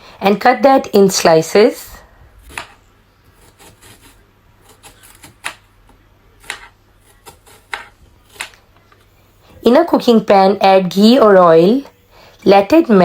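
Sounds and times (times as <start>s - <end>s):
knife slicing on cutting board: 2.4s - 5.7s, 6.4s - 8.6s.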